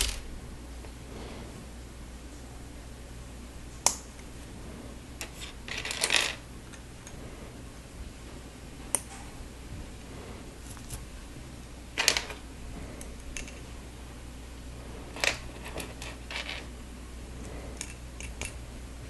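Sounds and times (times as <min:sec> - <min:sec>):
plastic pieces rattling: 0:00.0 - 0:00.2.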